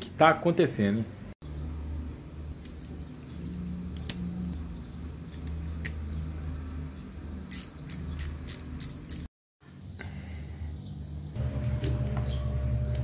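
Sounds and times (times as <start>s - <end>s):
metallic clicks of hand tools: 7.5s - 9.3s.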